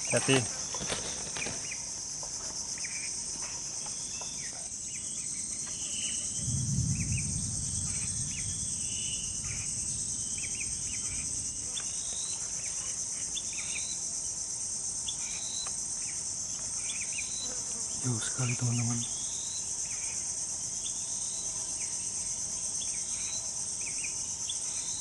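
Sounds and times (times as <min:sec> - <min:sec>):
insect chorus: 0:00.0 - 0:25.0
wind rumble on microphone: 0:06.1 - 0:11.8.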